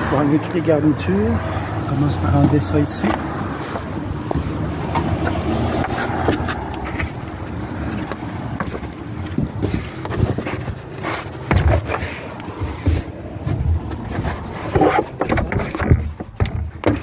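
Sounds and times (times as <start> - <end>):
plastic trim scraping: 1.8 - 17.0
clicks and knocks: 3.8 - 17.0.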